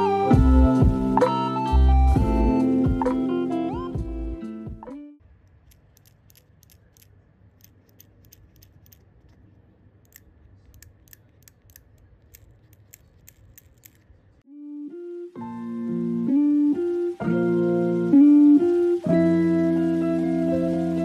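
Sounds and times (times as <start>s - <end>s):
small objects clicking: 5.3s - 9.5s, 10.1s - 14.2s
guitar music: 14.5s - 21.0s.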